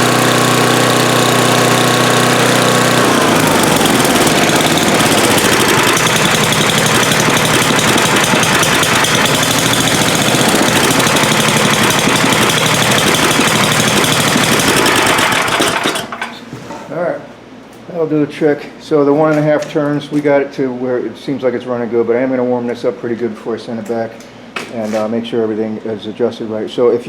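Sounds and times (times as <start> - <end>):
small engine idling: 0.0 - 16.3.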